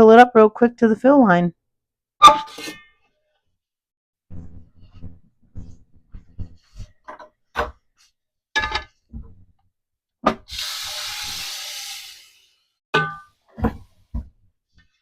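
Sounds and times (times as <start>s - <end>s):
tap water running into pot: 10.5s - 12.4s
pot clinking and knocking: 13.0s - 13.4s.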